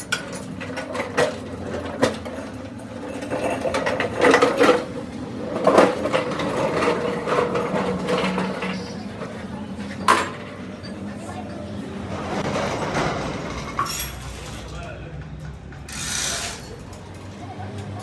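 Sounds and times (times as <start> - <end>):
metal rattling: 12.1 - 17.4.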